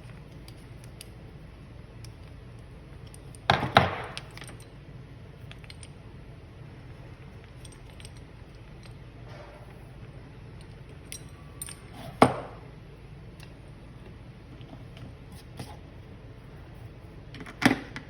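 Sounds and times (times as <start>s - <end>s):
metal hardware clinking: 5.4s - 6.0s, 7.4s - 9.6s, 10.5s - 12.6s.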